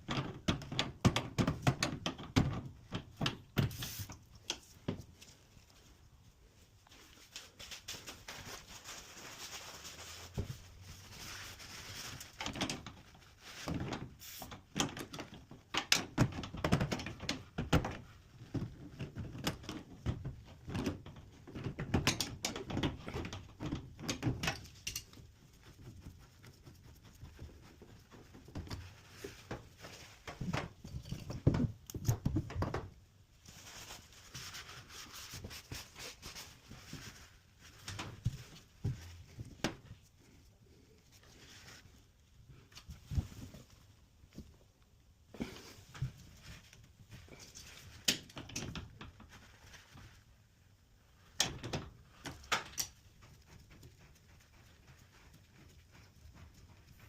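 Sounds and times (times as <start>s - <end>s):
faint hiss: 3.6s - 4.6s, 14.1s - 14.7s.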